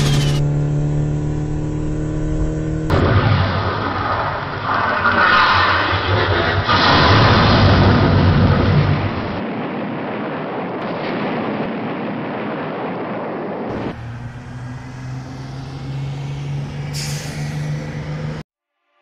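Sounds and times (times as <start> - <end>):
low engine hum: 0.0 - 3.2, 13.7 - 18.4
rushing engine and road noise: 0.0 - 9.4, 13.7 - 18.5.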